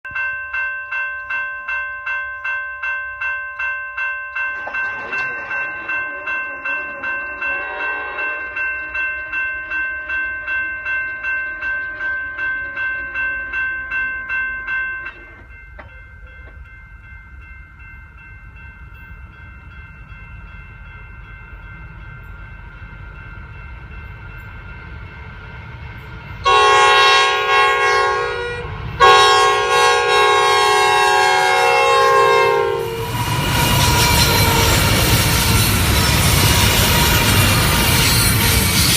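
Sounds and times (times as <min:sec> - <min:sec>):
low rumble of train: 0:00.1 - 0:38.9
pulsing ringing signal: 0:04.5 - 0:15.4
train horn blasts: 0:05.8 - 0:10.3, 0:26.4 - 0:38.9.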